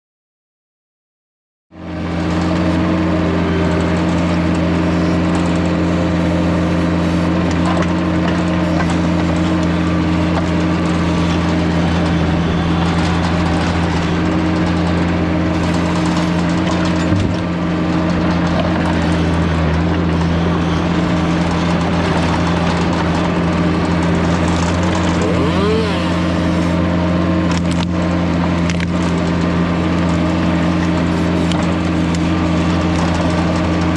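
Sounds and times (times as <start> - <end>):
loader engine humming: 1.8 - 33.9
wavering squeal: 3.5 - 11.4, 25.0 - 26.8.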